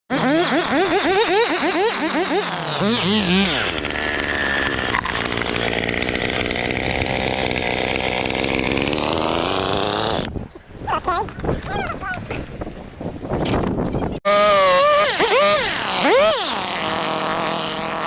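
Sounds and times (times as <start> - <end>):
chainsaw engine revving: 0.1 - 10.3, 14.3 - 18.0.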